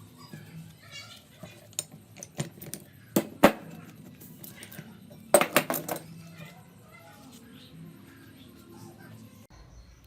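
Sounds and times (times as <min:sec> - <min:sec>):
metal tools clinking: 0:03.7 - 0:06.5.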